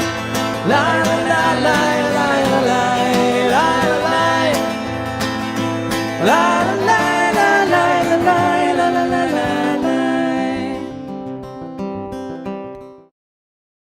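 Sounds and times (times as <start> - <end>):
strummed acoustic guitar: 0.0 - 13.1
man singing: 0.4 - 11.1.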